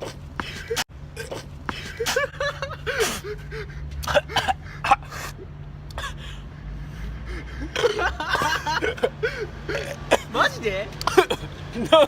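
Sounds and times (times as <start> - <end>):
man gasping and straining: 2.8 - 8.0.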